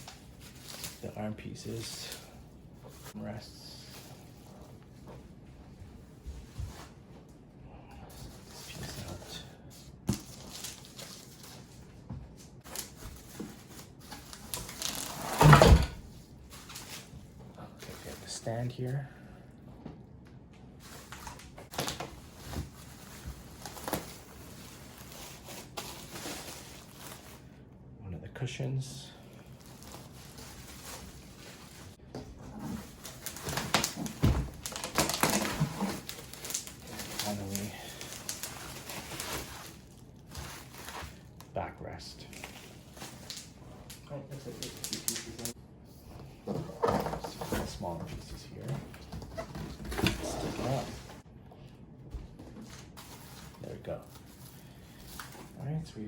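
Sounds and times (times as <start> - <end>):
packaging rustling and crinkling: 0.0 - 3.2, 10.1 - 18.4, 20.8 - 27.6, 29.2 - 41.5, 42.2 - 45.6, 46.5 - 51.2, 52.2 - 55.8.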